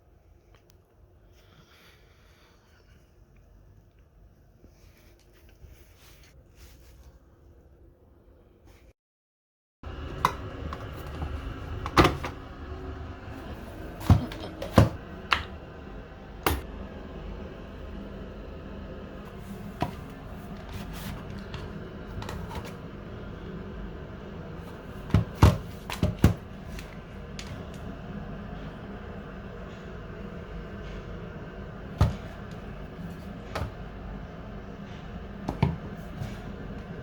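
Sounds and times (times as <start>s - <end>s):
steady low hum: 9.8s - 37.0s.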